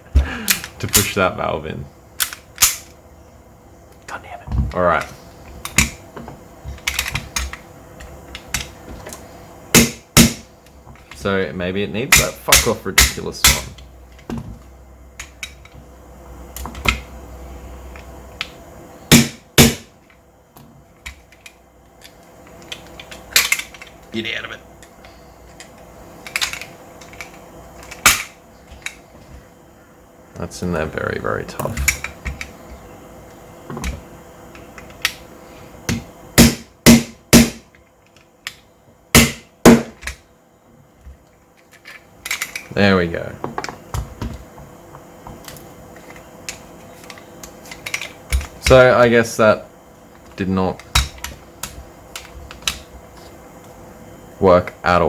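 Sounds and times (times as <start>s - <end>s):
loud sharp knocks: 9.8s - 10.4s, 19.1s - 19.9s, 35.9s - 37.6s, 39.2s - 40.0s
clicks of toy gun parts handled: 25.5s - 29.0s, 45.5s - 48.6s.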